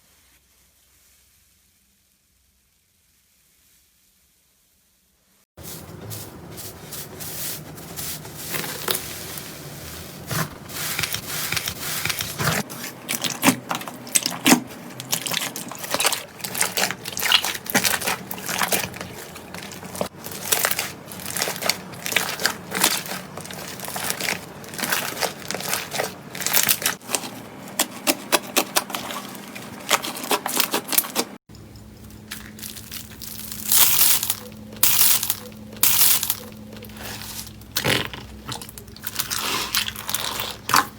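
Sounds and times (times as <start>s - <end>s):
slime popping and crackling: 13.2s - 27.0s.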